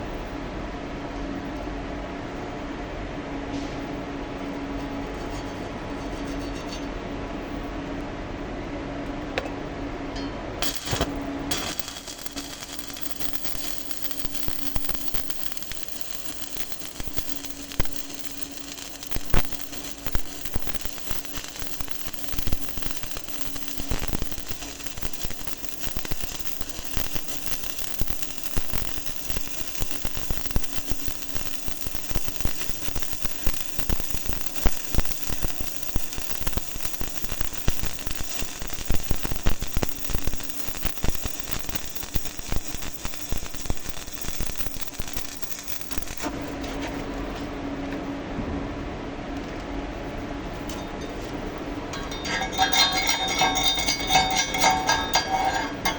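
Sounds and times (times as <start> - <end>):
faint steady hum: 0.0 - 55.9
welding arc crackling: 10.6 - 47.6, 50.4 - 55.9.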